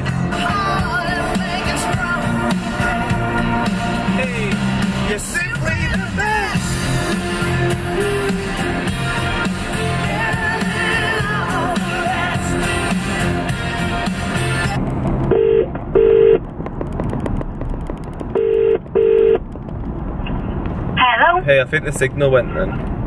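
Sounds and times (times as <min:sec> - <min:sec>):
pop music on car stereo: 0:00.0 - 0:15.9
phone ringing tone: 0:15.3 - 0:16.4, 0:18.4 - 0:19.4.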